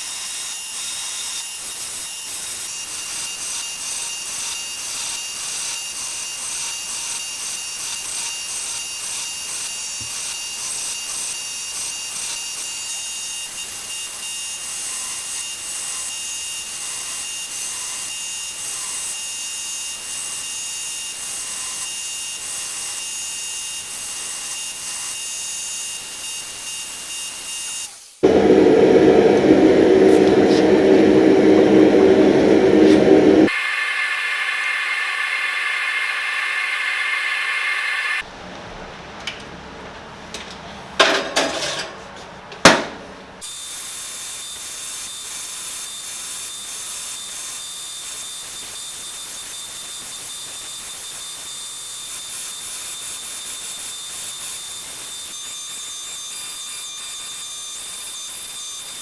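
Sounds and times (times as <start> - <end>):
higher-pitched whining tool: 28.2 - 38.2
loud low-pitched machine running: 28.2 - 38.2.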